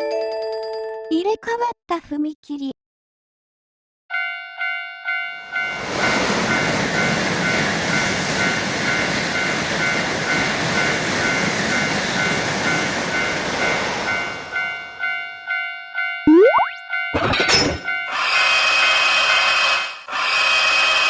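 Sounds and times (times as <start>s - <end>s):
railroad crossing bell ringing: 0.0s - 1.1s, 4.1s - 19.6s
train passing: 5.5s - 15.2s.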